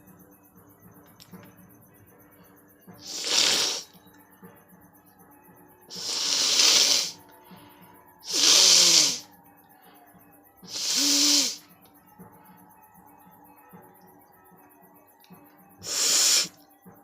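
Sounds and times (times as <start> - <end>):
person blowing nose hard: 3.0 - 3.9, 5.9 - 7.2, 8.2 - 9.2, 10.7 - 11.6, 15.8 - 16.5.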